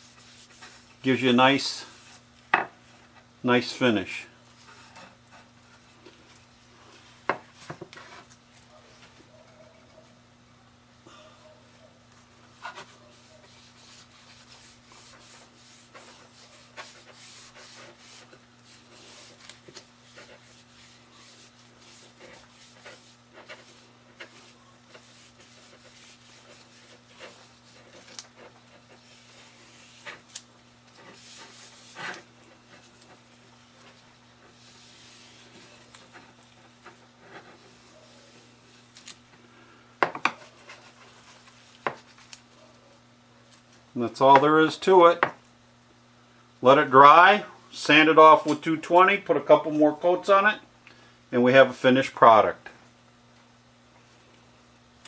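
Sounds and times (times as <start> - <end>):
cloth wiping wood: 0.0 - 2.2, 12.6 - 37.0
faint electrical hum: 0.0 - 55.0.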